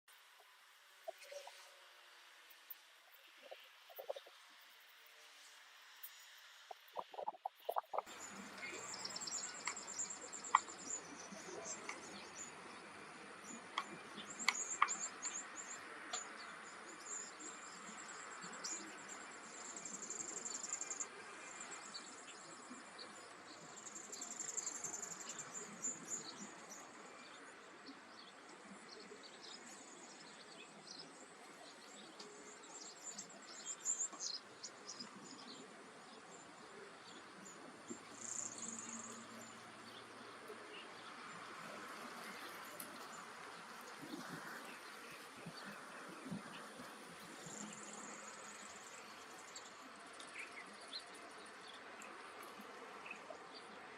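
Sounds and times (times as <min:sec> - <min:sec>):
bird chirps: 0:03.3 - 0:04.4, 0:06.7 - 0:12.5.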